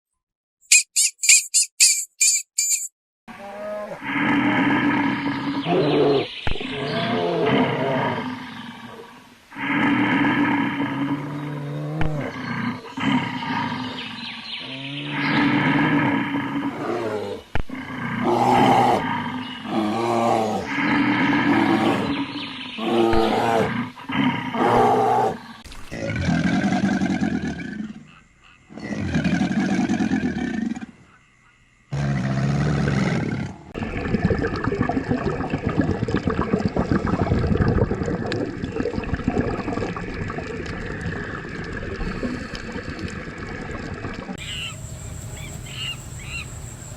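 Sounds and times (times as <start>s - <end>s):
loud animal calls: 44.4s - 46.9s.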